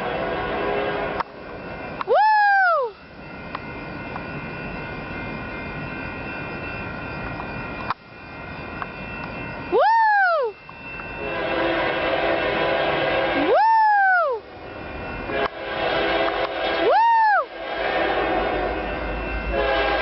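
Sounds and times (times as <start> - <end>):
train horn chord: 0.0 - 1.3, 11.2 - 13.5, 15.2 - 16.9, 17.5 - 20.0
commuter train passing: 0.0 - 20.0
man whooping: 13.5 - 14.4, 16.9 - 17.5.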